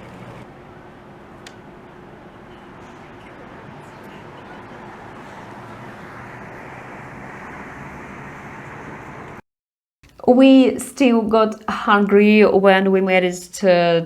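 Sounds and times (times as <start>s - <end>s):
city street traffic: 0.0s - 9.4s.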